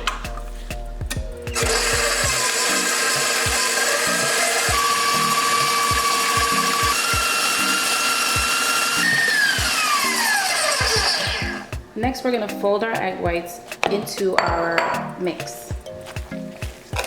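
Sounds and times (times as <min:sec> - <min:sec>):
stand mixer motor whine: 0:01.6 - 0:11.6.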